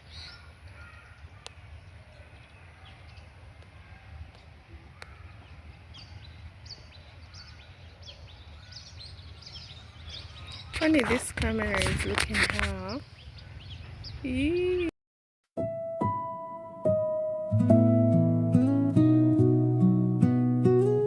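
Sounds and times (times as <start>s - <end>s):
faint bird chirps: 0.0s - 11.0s.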